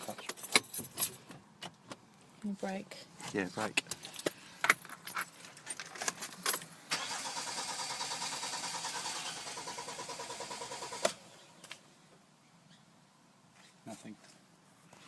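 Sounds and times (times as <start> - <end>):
car engine cranking: 4.0 - 11.4.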